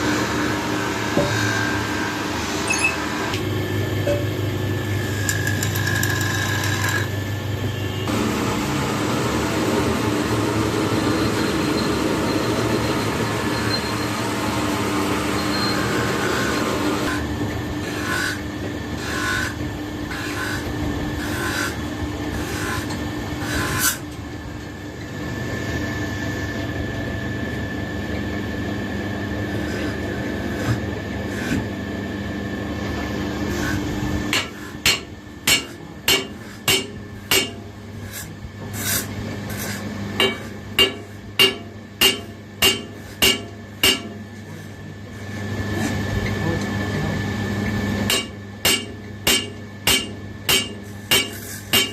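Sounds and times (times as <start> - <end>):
workshop machine humming: 0.0 - 51.9
hammer striking metal: 34.3 - 37.7, 40.2 - 44.2, 48.1 - 51.9.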